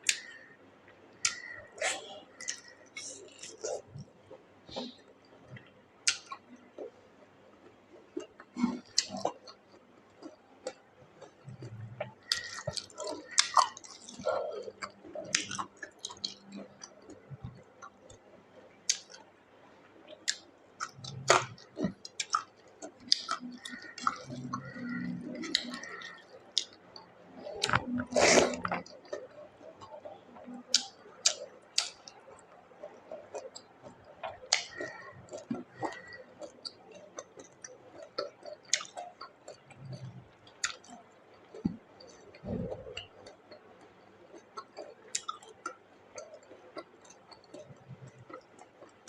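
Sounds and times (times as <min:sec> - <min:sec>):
person chewing food: 0:00.0 - 0:00.5, 0:01.2 - 0:07.0, 0:07.6 - 0:19.2, 0:20.0 - 0:49.0
wet mouth noises: 0:01.2 - 0:04.1, 0:20.3 - 0:43.6.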